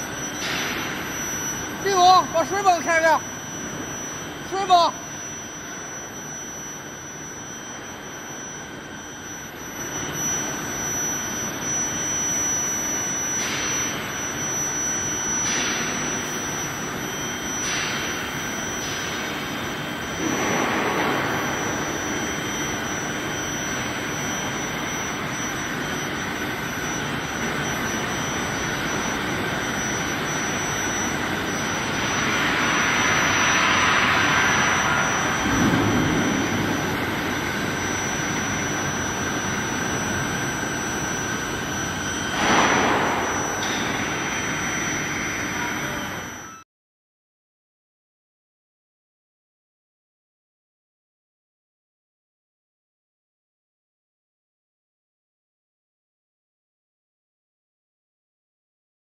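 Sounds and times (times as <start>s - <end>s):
high-pitched machine whine: 0.0s - 46.7s.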